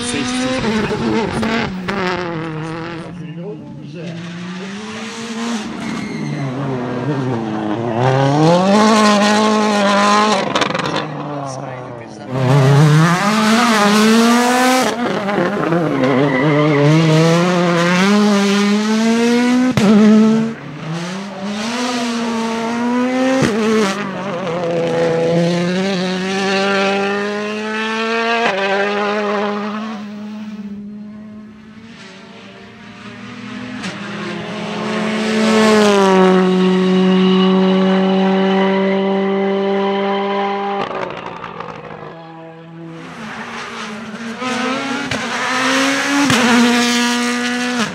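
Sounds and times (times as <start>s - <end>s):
rally car engines revving past: 0.0s - 47.9s.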